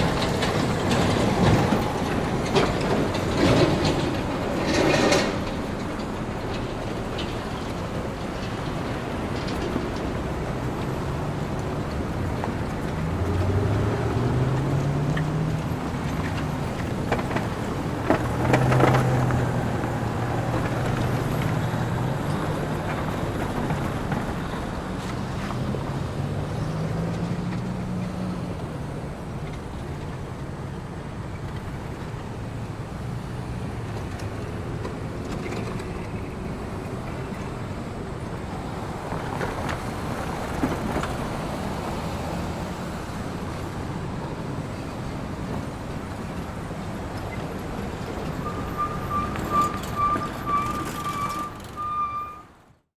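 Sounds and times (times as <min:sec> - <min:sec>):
vehicles driving by: 0:00.0 - 0:52.9.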